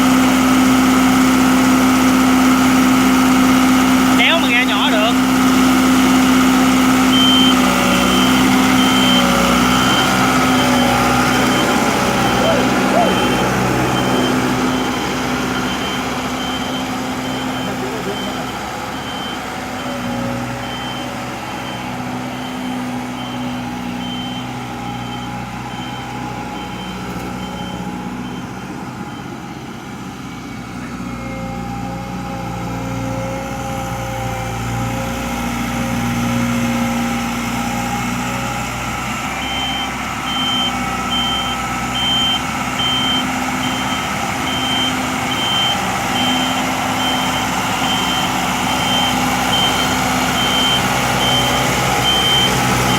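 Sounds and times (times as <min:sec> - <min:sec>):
heavy vehicle engine running: 0:00.0 - 0:52.9
backup alarm beeping: 0:04.1 - 0:05.3, 0:06.9 - 0:29.4, 0:39.4 - 0:52.9.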